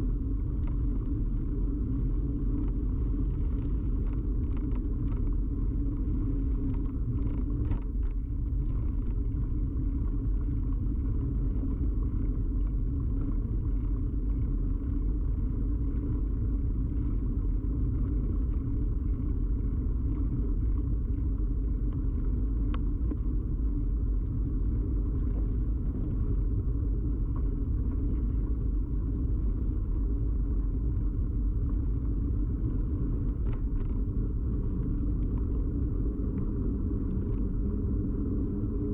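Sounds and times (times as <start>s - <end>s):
bicycle rumble in motion: 0.0s - 38.9s.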